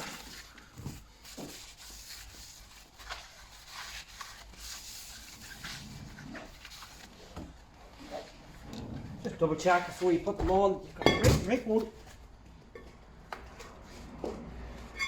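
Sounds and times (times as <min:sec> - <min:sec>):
rubbing and wiping metal discs: 0:00.0 - 0:08.6.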